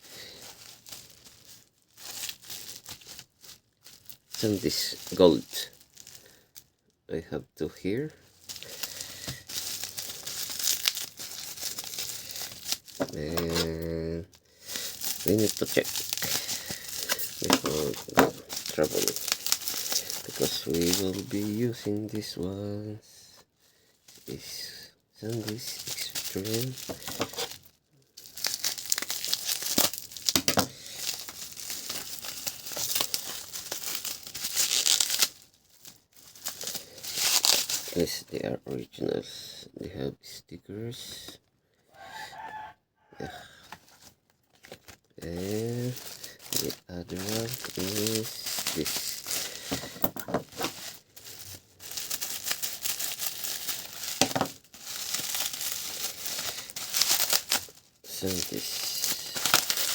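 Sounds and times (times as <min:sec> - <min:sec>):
packaging being torn and crinkled: 0:00.0 - 0:06.8, 0:07.9 - 0:22.3, 0:24.1 - 0:38.3, 0:43.9 - 0:59.9.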